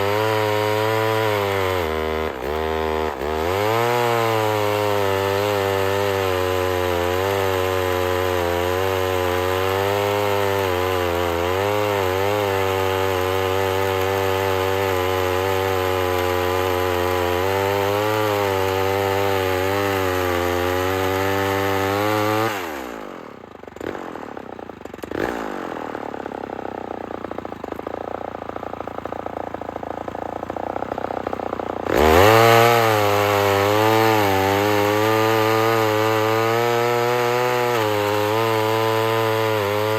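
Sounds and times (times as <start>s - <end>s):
chainsaw cutting log: 0.0s - 39.9s.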